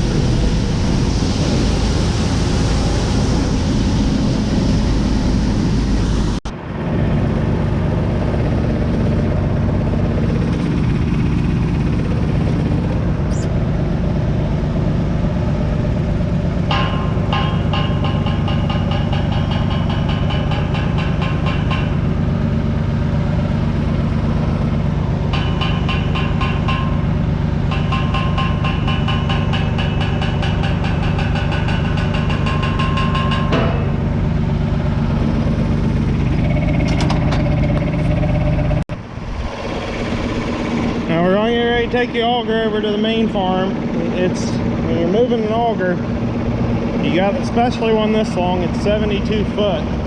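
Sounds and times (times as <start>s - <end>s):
farm machine engine running: 0.0s - 50.0s
rapid rattling whine: 0.0s - 50.0s.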